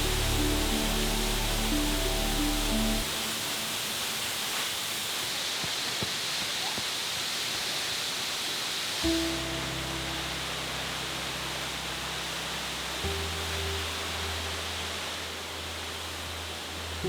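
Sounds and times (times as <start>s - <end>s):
background music: 0.0s - 4.2s
waterfall rushing: 0.0s - 17.0s.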